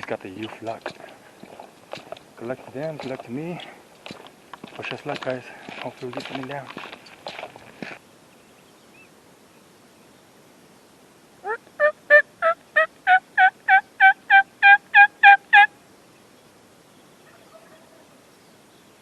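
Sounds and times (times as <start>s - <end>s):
turkey yelps: 11.4s - 15.7s, 17.2s - 18.0s.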